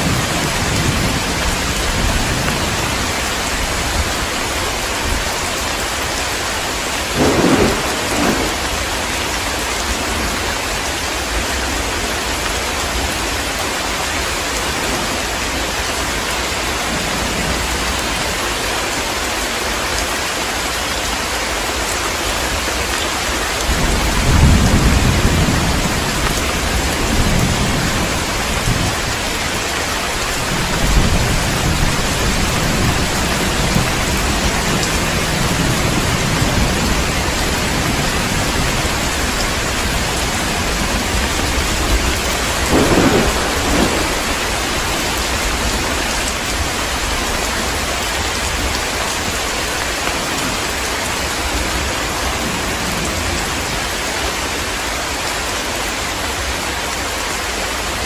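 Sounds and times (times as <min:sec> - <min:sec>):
thunder rumbling: 0:00.0 - 0:05.5, 0:07.0 - 0:10.5, 0:23.6 - 0:49.4
heavy rain falling: 0:00.0 - 0:58.0
sharp thunder clap: 0:07.2 - 0:08.9, 0:40.9 - 0:45.8.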